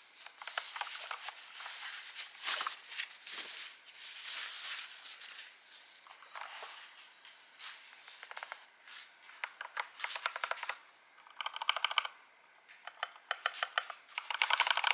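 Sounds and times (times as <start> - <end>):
packaging rustling and scraping: 0.0 - 9.1.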